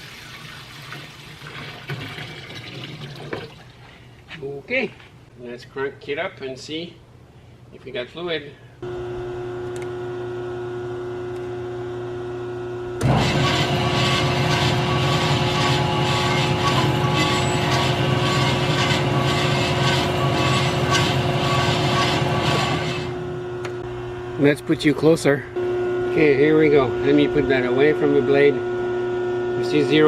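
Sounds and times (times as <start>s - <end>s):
bandsaw running with hiss: 13.0s - 23.2s
pump motor humming: 13.0s - 23.8s.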